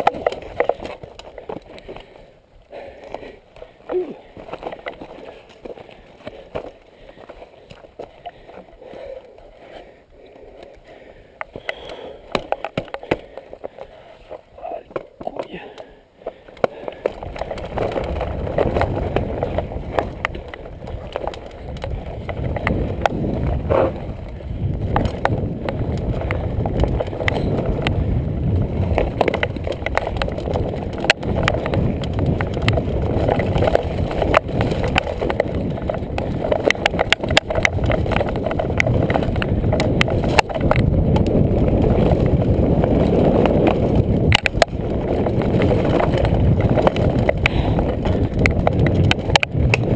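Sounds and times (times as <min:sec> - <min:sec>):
bike tyres rumbling over dirt: 0:00.0 - 0:49.9
bike frame and chain clattering: 0:16.8 - 0:49.9.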